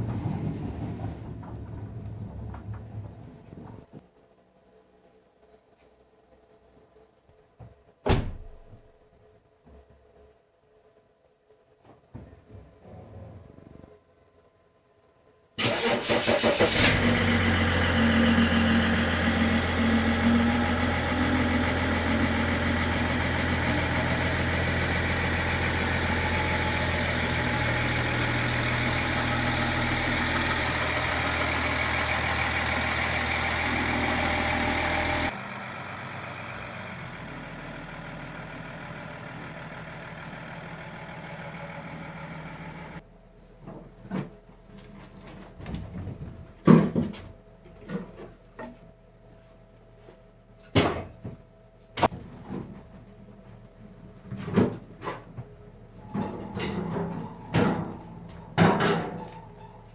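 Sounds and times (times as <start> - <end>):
diesel engine idling: 15.7 - 43.0.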